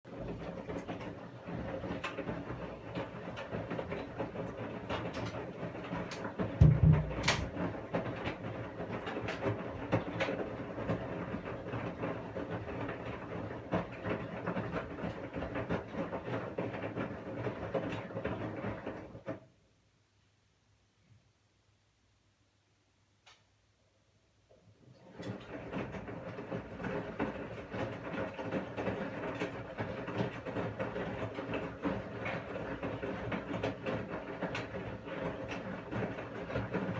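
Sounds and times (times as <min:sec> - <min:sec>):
washing machine motor hum: 0:00.1 - 0:19.4, 0:24.5 - 0:36.9
washing machine drum clicks and knocks: 0:00.2 - 0:08.5
heavy low thump: 0:06.6 - 0:07.5.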